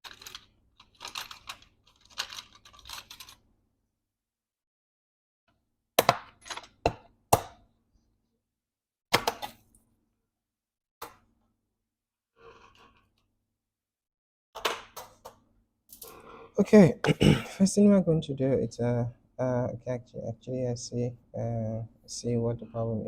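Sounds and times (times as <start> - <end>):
laptop cover clicks and knocks: 9.1 - 9.6.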